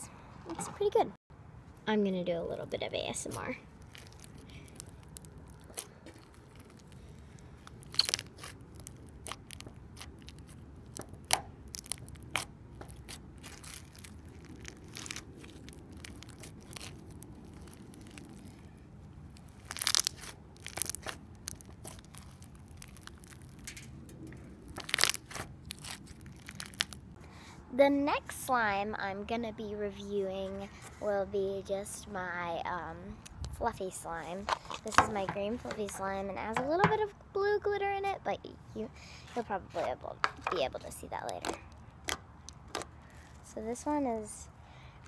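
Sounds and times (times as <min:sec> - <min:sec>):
slime crunchy pops and clicks: 0:07.6 - 0:18.7, 0:19.4 - 0:23.8, 0:24.7 - 0:27.0.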